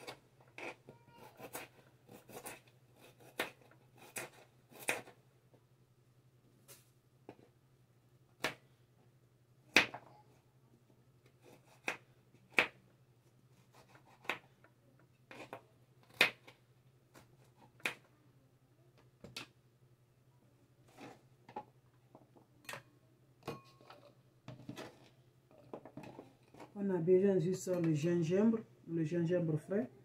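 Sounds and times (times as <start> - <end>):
knife cutting on a cutting board: 0.0 - 5.1
faint low hum: 0.1 - 30.0.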